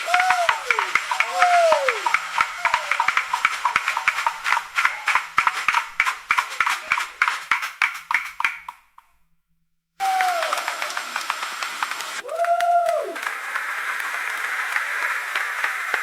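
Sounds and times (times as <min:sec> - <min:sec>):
marketplace crowd: 0:00.0 - 0:07.7, 0:10.0 - 0:16.0
clatter of knocks and clicks: 0:02.0 - 0:08.8.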